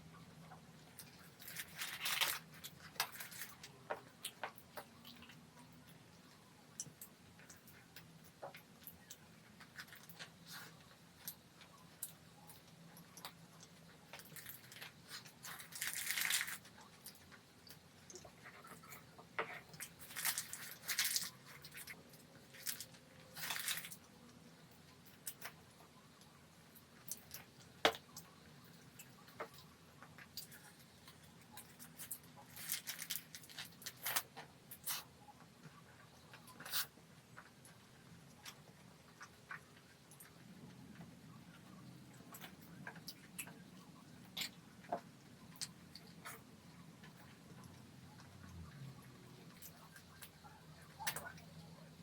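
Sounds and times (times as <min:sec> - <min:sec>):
food crunching: 0:06.7 - 0:25.6, 0:26.7 - 0:35.1.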